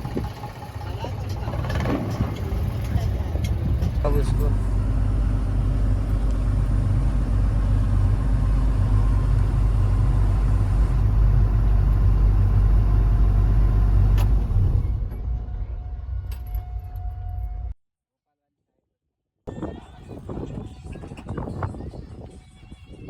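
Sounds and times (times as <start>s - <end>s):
diesel engine rumbling: 0.0s - 17.8s.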